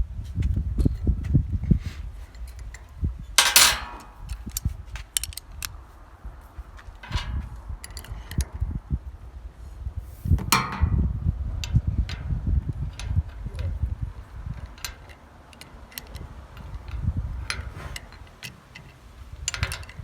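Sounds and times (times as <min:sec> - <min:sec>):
metal tools clinking: 0:02.2 - 0:05.6, 0:07.0 - 0:08.4, 0:10.5 - 0:11.0, 0:14.5 - 0:20.0
ringing metal clanks: 0:03.4 - 0:04.6, 0:07.0 - 0:07.4, 0:10.5 - 0:13.8.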